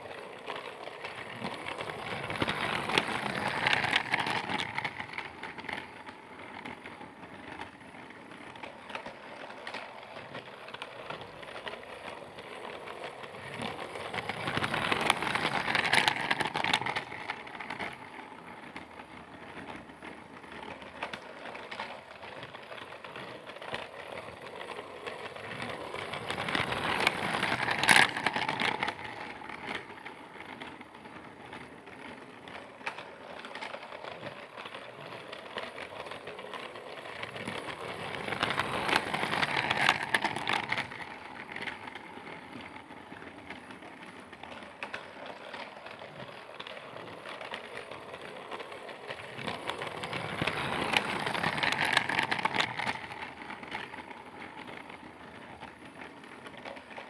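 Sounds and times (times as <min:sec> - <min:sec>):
toy train rattling on track: 0:00.0 - 0:57.0.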